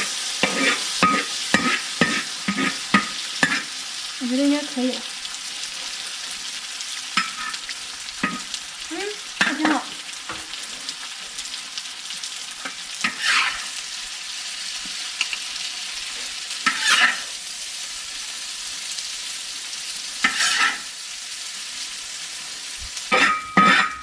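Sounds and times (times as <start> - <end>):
spatula scraping a wok: 0.0 - 4.0, 7.2 - 8.5, 12.6 - 13.9, 14.9 - 17.4, 20.2 - 21.0, 22.3 - 24.0
tofu sizzling in a wok: 0.0 - 24.0.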